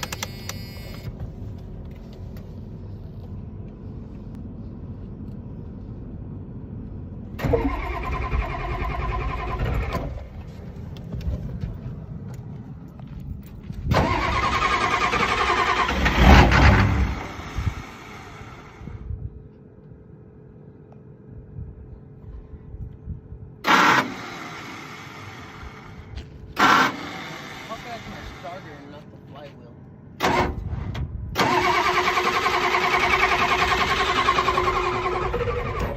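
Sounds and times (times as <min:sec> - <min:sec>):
heavy low engine burst: 0:07.3 - 0:10.3, 0:13.9 - 0:19.1, 0:30.2 - 0:35.9
engine starter cranking: 0:07.4 - 0:10.3, 0:13.9 - 0:18.3, 0:23.6 - 0:25.2, 0:26.6 - 0:27.8, 0:30.2 - 0:35.9.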